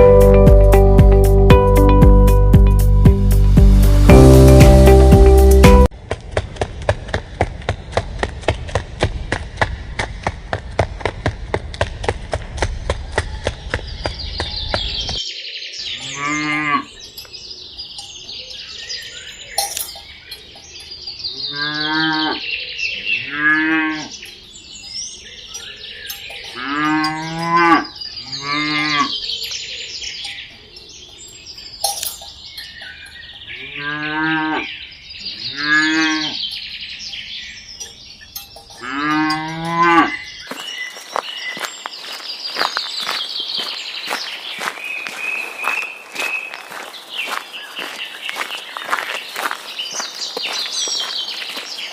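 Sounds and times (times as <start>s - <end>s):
birds chirping faintly: 12.7s - 51.9s
cattle mooing: 16.0s - 16.9s, 21.5s - 22.4s, 23.2s - 24.2s, 26.5s - 29.1s, 33.6s - 34.7s, 38.8s - 40.2s.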